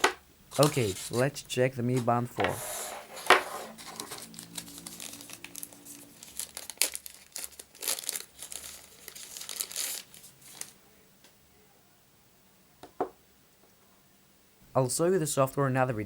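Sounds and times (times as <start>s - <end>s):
packaging crinkling and rustling: 0.0s - 1.3s, 2.0s - 10.8s.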